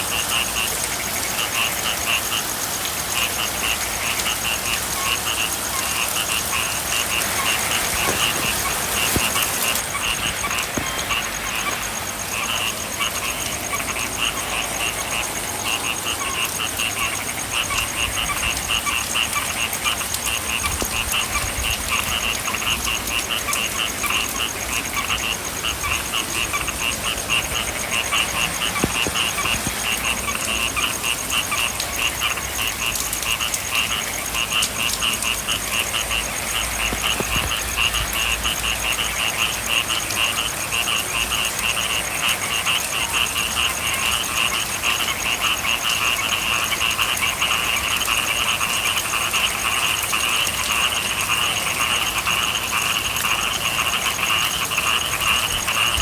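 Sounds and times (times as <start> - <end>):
rain hissing: 0.0 - 15.9, 25.5 - 32.0, 35.1 - 38.7
frogs croaking: 0.0 - 56.0.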